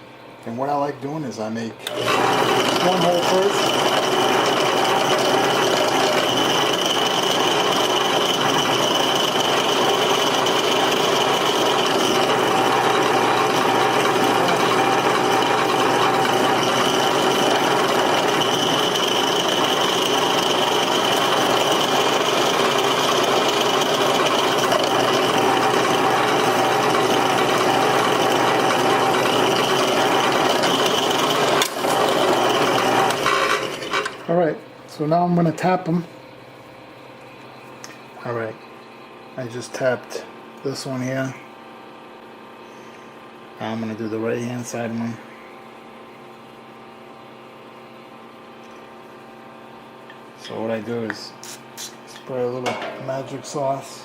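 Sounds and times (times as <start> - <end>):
electric drill drilling: 1.8 - 34.2.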